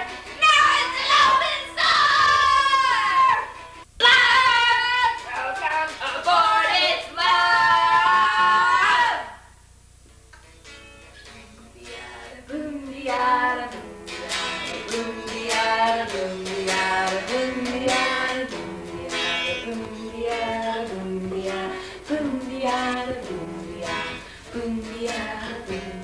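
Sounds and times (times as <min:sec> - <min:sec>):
guitar playing: 0:00.0 - 0:01.8, 0:10.3 - 0:26.0
girls singing: 0:00.0 - 0:09.4, 0:11.2 - 0:26.0.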